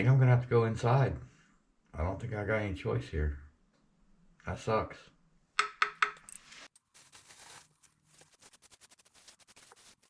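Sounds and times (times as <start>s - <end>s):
scraping and small scratches: 6.3s - 10.0s.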